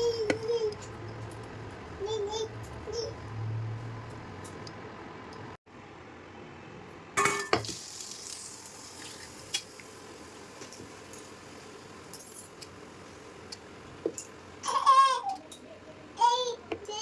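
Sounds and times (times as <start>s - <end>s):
faint steady sizzle: 7.5s - 16.2s.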